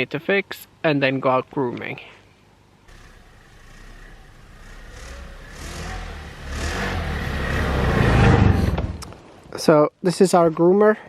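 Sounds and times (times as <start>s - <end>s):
snowmobile engine speeding up: 2.9s - 9.0s.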